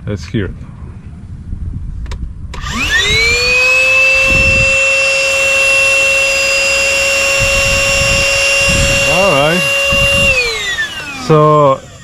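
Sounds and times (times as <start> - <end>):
vacuum cleaner motor whining: 2.6 - 12.0.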